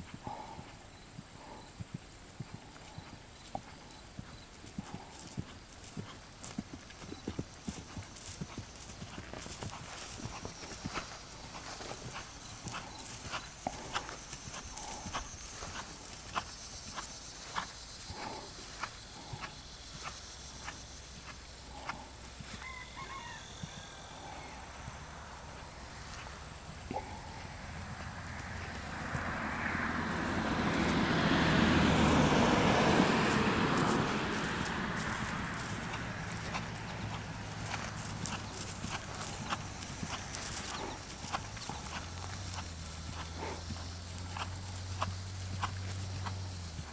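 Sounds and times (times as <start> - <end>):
horse hooves clip-clopping: 0.0 - 46.9
vehicle driving past: 7.3 - 46.9.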